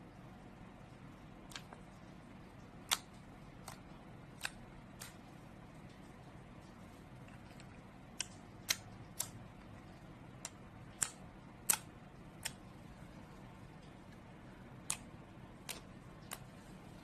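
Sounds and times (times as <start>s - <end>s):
slime clicking and popping: 10.4s - 12.7s.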